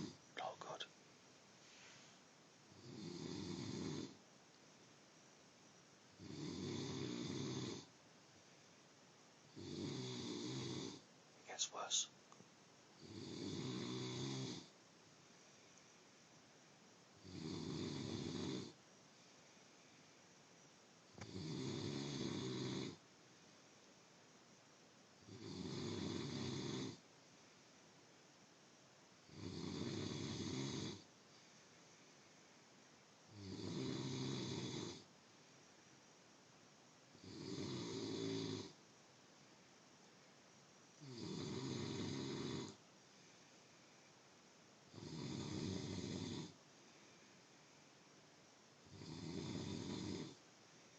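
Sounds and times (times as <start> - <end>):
person snoring: 2.7 - 4.2, 6.2 - 7.9, 9.5 - 11.0, 13.0 - 14.7, 17.2 - 18.8, 21.2 - 23.0, 25.3 - 27.0, 29.3 - 31.0, 33.3 - 35.0, 37.2 - 38.8, 41.0 - 42.8, 44.9 - 46.6, 48.8 - 50.4.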